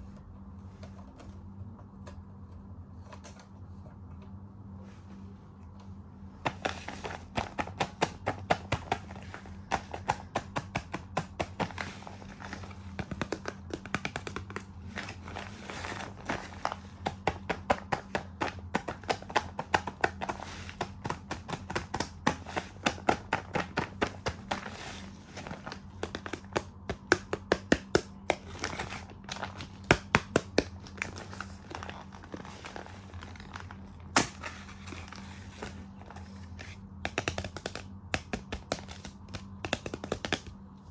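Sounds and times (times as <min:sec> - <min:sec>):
steady low hum: 0:00.0 - 0:40.9
packaging crinkling: 0:28.0 - 0:36.6
plastic toys clicking and tapping: 0:37.1 - 0:40.5.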